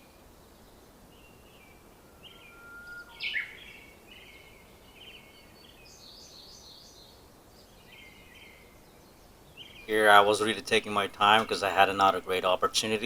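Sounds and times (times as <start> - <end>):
faint outdoor background noise: 0.0 - 13.0
birds chirping: 1.2 - 7.0, 9.6 - 13.0.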